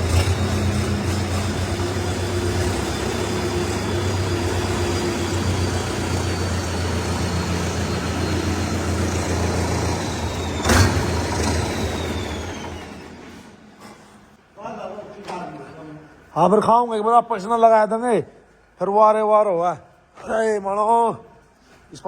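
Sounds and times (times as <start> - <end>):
tractor diesel engine idling: 0.0 - 13.4.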